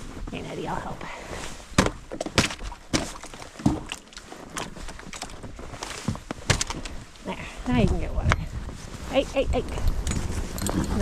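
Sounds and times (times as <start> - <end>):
ice cracking under knocks: 1.7 - 7.0.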